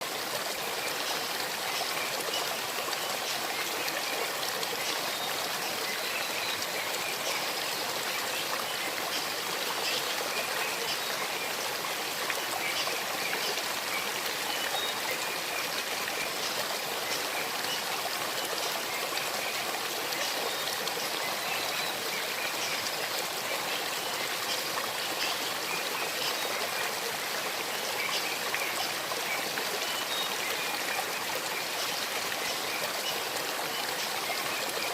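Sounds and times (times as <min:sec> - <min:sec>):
stream babbling over stones: 0:00.0 - 0:34.9.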